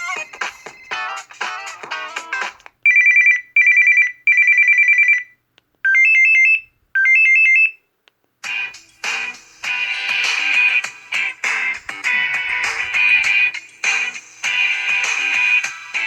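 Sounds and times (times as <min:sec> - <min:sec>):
musical ringtone: 0:00.0 - 0:05.2
warbling electronic phone ring: 0:02.9 - 0:05.3.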